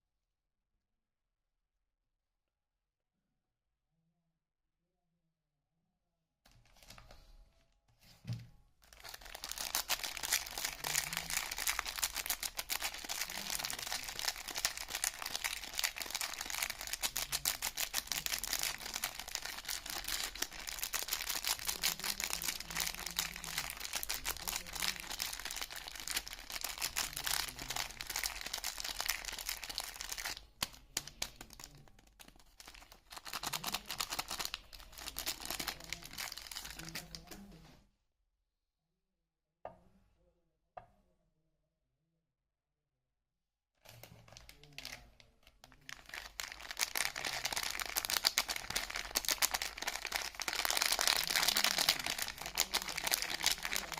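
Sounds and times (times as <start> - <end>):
wrapping crinkling and tearing: 8.8 - 37.4, 43.9 - 53.9.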